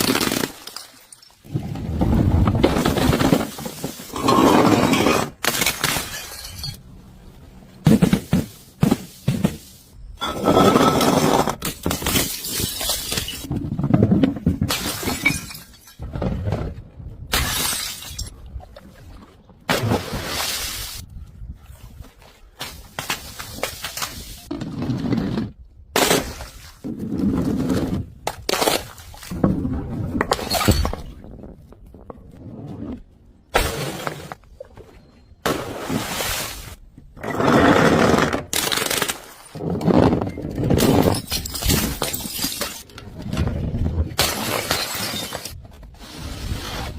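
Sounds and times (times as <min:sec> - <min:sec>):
glass bottles shattering: 0:04.1 - 0:06.9, 0:10.2 - 0:13.5, 0:14.7 - 0:16.0, 0:17.4 - 0:18.3, 0:40.7 - 0:42.9, 0:44.2 - 0:45.6.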